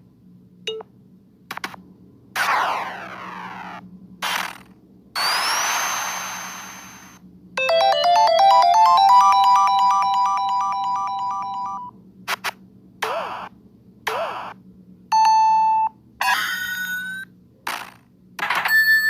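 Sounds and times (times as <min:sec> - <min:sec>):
synthesized ringtone-like jingle: 0:07.6 - 0:11.9.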